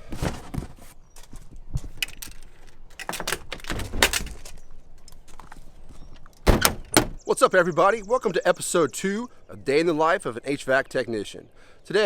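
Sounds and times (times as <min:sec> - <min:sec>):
knocks and clicks: 0:06.4 - 0:07.2.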